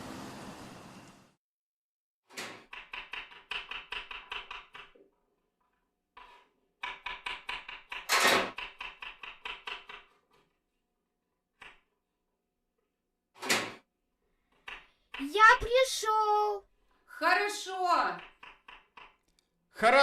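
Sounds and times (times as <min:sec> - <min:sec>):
rapid sharp knocks: 0:02.6 - 0:05.0, 0:06.8 - 0:10.1.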